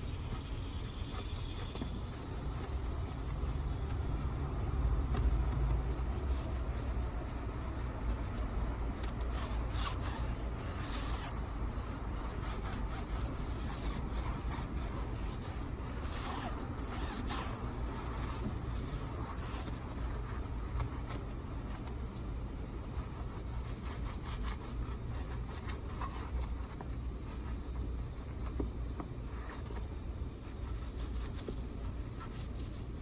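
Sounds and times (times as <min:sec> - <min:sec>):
rubbing and scraping on tire: 0:00.0 - 0:33.0.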